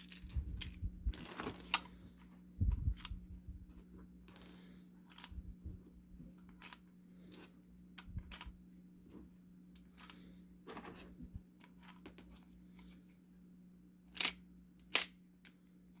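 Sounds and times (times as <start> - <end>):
handling rustles: 0.0 - 13.2
steady low hum: 0.0 - 16.0.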